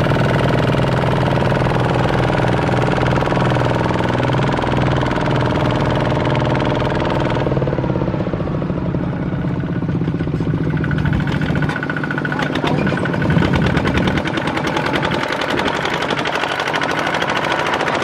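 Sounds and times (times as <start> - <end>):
diesel engine knocking: 0.0 - 18.0.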